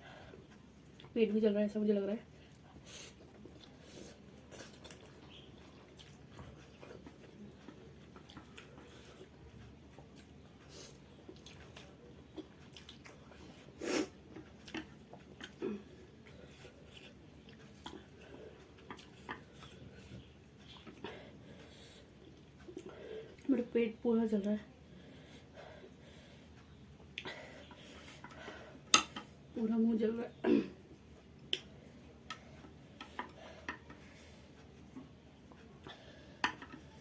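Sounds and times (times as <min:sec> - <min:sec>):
wet mouth chewing sounds: 0:02.5 - 0:15.6.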